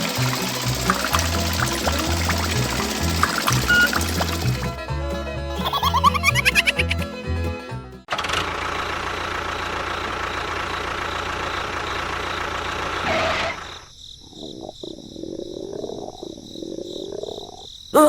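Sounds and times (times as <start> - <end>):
small engine running: 0.0 - 4.9, 8.1 - 13.8.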